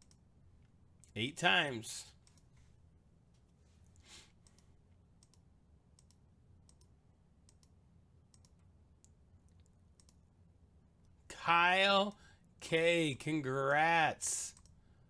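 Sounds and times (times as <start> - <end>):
computer mouse clicks: 0.0 - 0.2, 2.2 - 2.5, 4.4 - 10.2.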